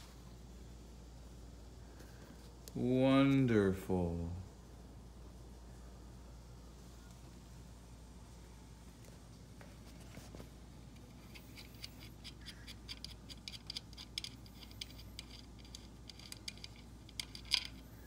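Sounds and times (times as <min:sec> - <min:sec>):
faint clicks and scratches of handwork: 0:09.0 - 0:17.8.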